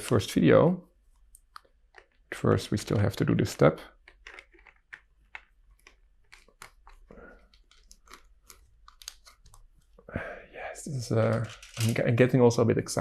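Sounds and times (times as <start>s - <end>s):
plastic bricks clicking and rattling: 1.6s - 9.6s, 11.2s - 12.1s.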